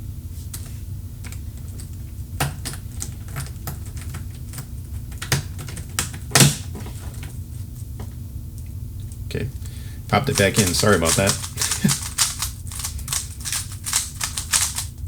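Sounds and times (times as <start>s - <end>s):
plastic puzzle cube clicking: 10.3s - 14.9s.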